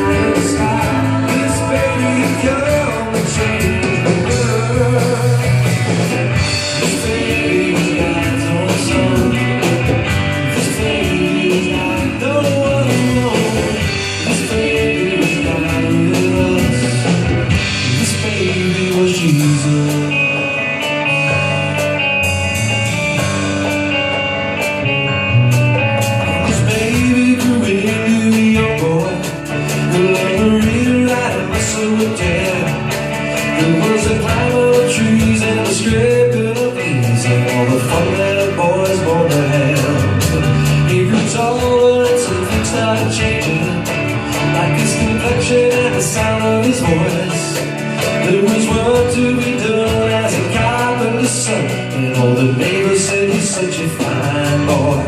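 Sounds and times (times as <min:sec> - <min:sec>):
band playing upbeat instrumental: 0:00.0 - 0:55.0
drums keeping a steady beat: 0:00.0 - 0:55.0
guitar: 0:00.0 - 0:55.0.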